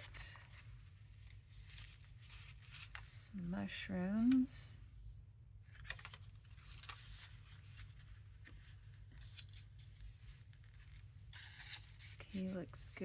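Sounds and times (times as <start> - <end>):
paper rustling and snipping: 1.6 - 3.2, 5.7 - 13.0.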